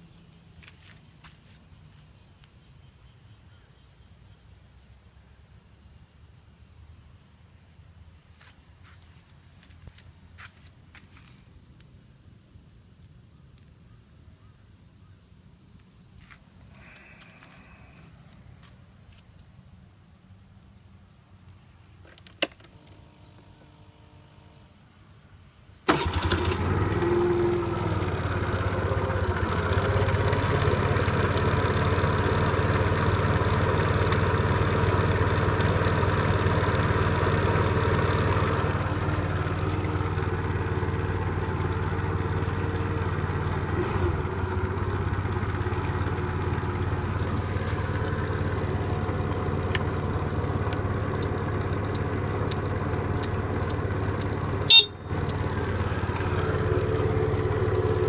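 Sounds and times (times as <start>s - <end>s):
scooter engine idling: 25.9s - 58.0s.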